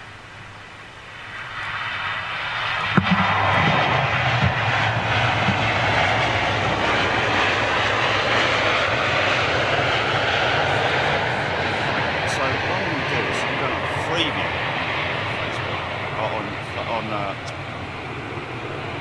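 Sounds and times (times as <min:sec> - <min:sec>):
jet engines roaring: 0:00.0 - 0:19.0.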